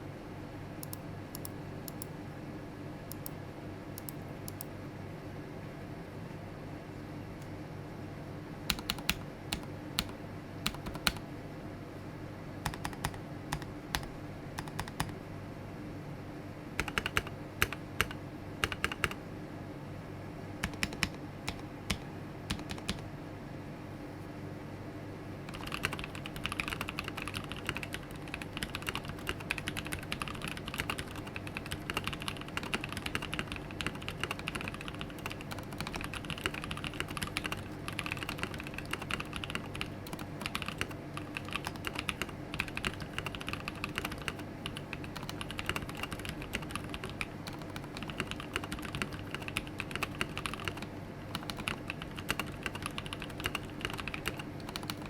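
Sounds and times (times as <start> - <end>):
fast typing on mechanical keyboard: 8.7 - 10.1, 10.7 - 11.2, 12.7 - 15.2, 16.8 - 19.2, 20.6 - 23.0, 25.5 - 55.0.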